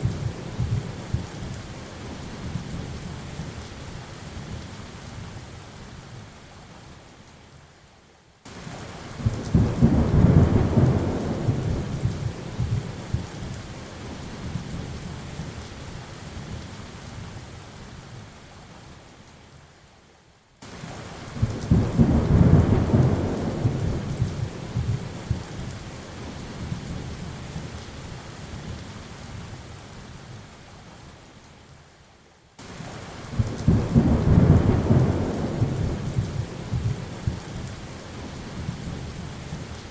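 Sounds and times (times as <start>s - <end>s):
steady rain: 0.0s - 39.9s
rolling thunder: 9.3s - 13.3s, 21.4s - 25.5s, 33.3s - 37.7s.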